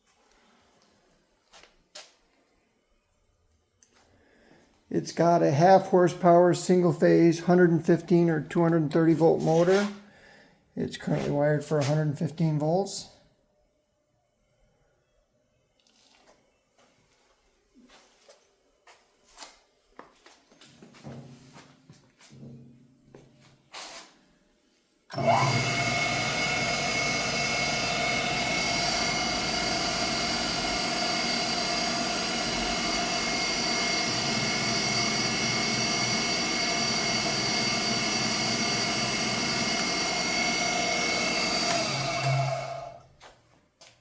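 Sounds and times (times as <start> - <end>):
surface grinder motor whine: 9.1 - 10.0, 25.1 - 43.0.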